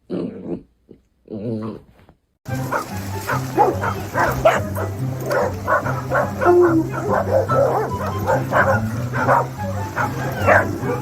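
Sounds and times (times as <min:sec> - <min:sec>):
background music: 0:02.5 - 0:11.0
dog barking and yipping: 0:02.5 - 0:11.0.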